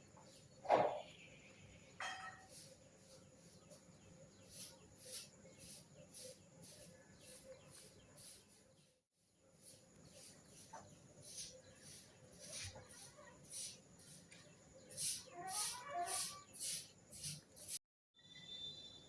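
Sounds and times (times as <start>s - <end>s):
high-pitched bird chirps: 14.9s - 16.8s.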